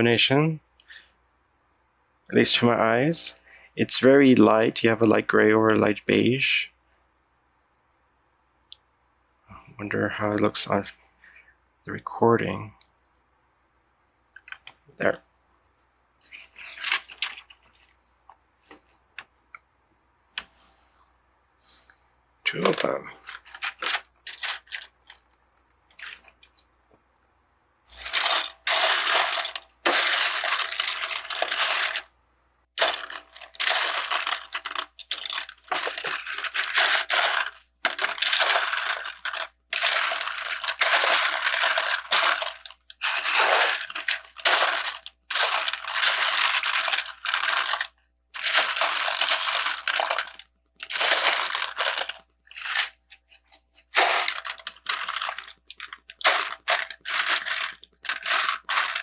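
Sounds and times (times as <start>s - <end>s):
plastic pieces clattering: 16.3s - 17.9s, 22.5s - 25.2s, 25.9s - 26.6s, 27.9s - 32.1s, 32.8s - 59.0s.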